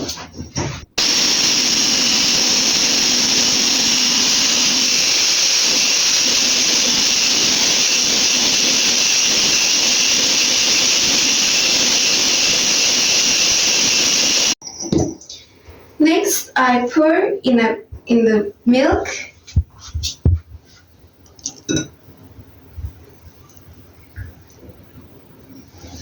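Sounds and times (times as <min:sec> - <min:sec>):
electric mixer whirring: 0:01.0 - 0:14.6.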